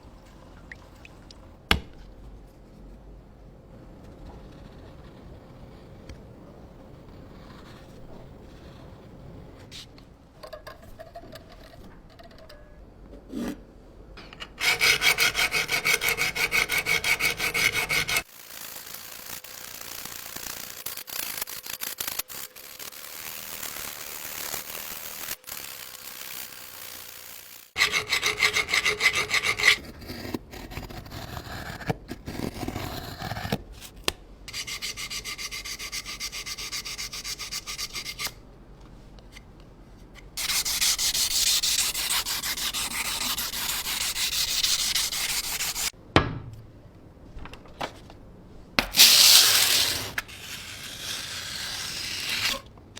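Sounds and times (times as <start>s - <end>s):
blade scraping on sharpener: 14.4s - 22.9s, 27.8s - 33.6s, 40.4s - 45.9s, 49.0s - 52.7s.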